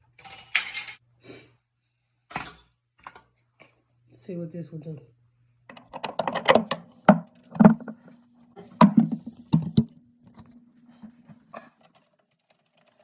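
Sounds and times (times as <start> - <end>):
sharp knocks and clicks: 5.7 - 10.5
refrigerator fan humming: 5.7 - 12.0.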